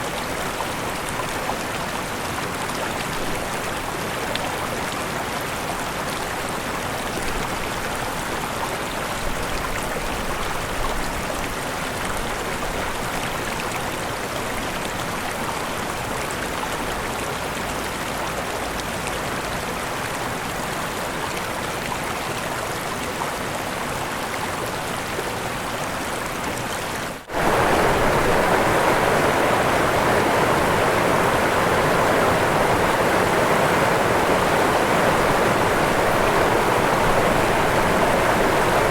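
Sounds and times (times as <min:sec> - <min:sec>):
waterfall rushing: 0:25.6 - 0:38.9.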